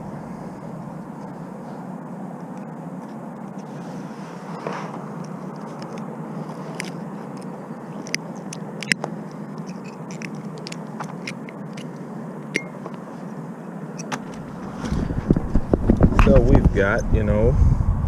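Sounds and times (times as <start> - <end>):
background hiss and rumble: 0.0 - 18.0
sharp clicks and light scrapes: 4.5 - 13.0.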